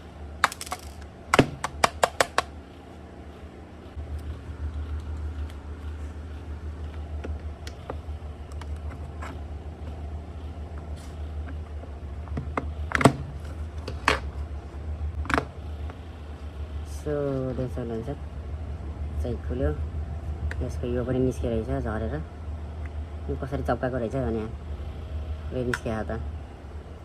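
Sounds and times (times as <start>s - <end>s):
steady low hum: 0.0s - 27.0s
plastic casing clicks and taps: 0.4s - 2.5s.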